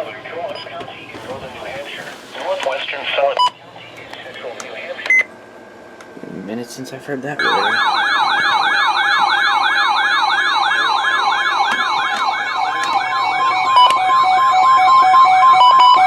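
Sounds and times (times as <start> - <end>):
two-pitch beeping tone: 7.4 - 8.2
electronic alarm siren sweep: 7.4 - 16.0.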